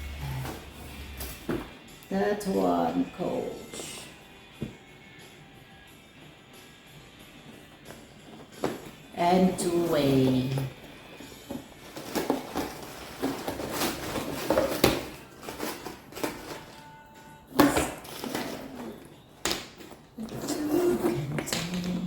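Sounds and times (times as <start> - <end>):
bag rustling: 7.4 - 17.0.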